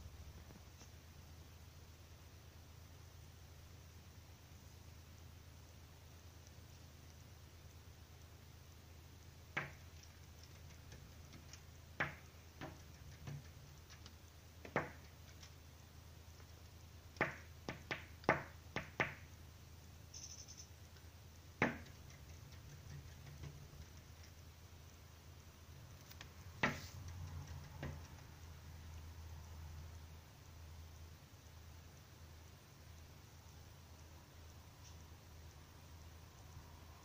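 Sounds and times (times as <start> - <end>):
bird beak tapping on window glass: 9.5 - 15.6, 17.2 - 19.3, 21.6 - 24.4, 26.2 - 28.4.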